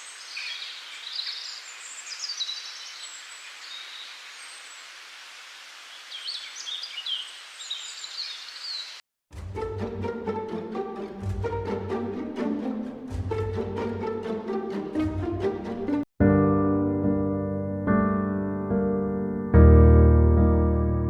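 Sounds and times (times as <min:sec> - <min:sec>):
songbirds chirping and singing: 0:00.0 - 0:04.6, 0:06.0 - 0:09.0
instrumental music: 0:09.3 - 0:21.0.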